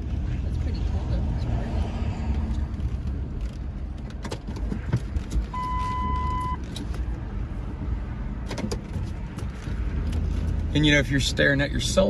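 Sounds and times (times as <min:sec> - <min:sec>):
road and engine rumble: 0:00.0 - 0:12.0
electronic beep: 0:05.6 - 0:06.6.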